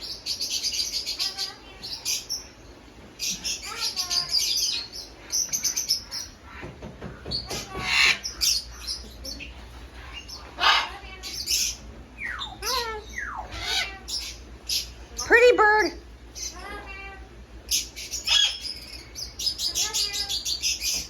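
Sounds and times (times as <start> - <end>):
parrots chirping and calling: 0.0 - 21.0.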